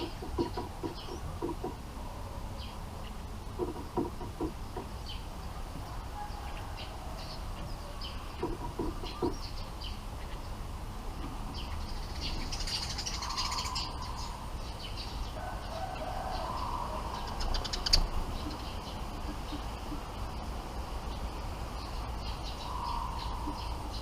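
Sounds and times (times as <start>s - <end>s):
rapid rattling bird call: 0.0s - 1.8s, 3.0s - 5.3s, 11.5s - 15.0s, 15.7s - 20.5s
birds chirping: 0.0s - 24.0s.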